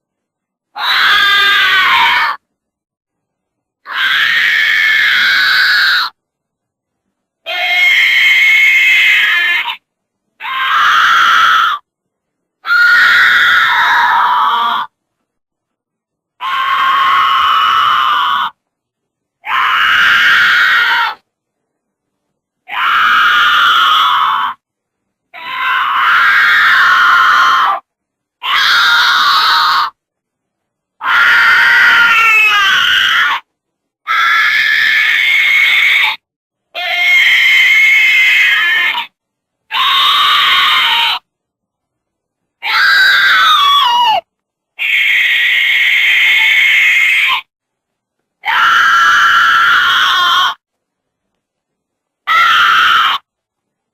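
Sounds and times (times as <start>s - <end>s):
goats screaming: 0.8s - 2.4s, 3.9s - 6.1s, 10.4s - 11.8s, 16.4s - 18.5s, 19.4s - 21.2s, 22.7s - 24.6s, 25.4s - 27.8s, 28.4s - 29.9s, 31.0s - 33.4s, 36.8s - 39.1s, 39.7s - 41.2s, 42.6s - 44.2s, 44.8s - 47.5s, 48.4s - 50.6s, 52.3s - 53.3s.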